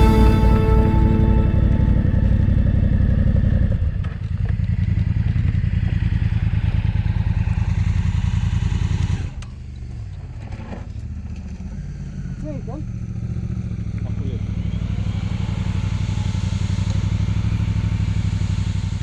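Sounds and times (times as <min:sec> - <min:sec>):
music: 0:00.0 - 0:03.8.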